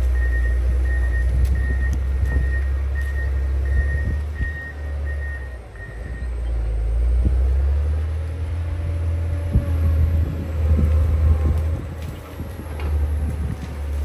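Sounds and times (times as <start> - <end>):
diesel engine rumbling: 0.0 - 14.0
reversing alarm beeping: 0.1 - 6.4.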